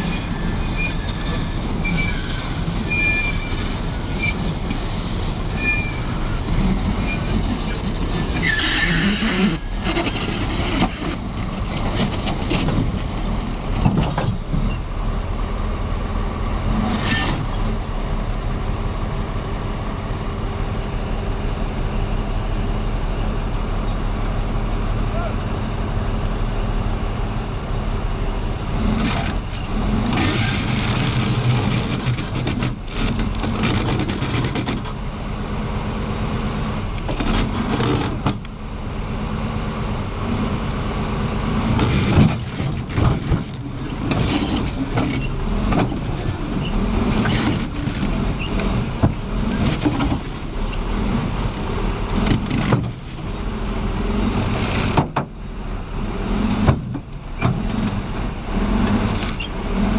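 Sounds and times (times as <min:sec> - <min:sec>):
heavy vehicle engine running: 0:00.0 - 0:59.9
knocks and clatter: 0:09.9 - 0:13.1, 0:30.1 - 0:35.0, 0:41.7 - 0:46.1, 0:52.2 - 0:53.0, 0:54.4 - 0:55.4, 0:56.5 - 0:58.0.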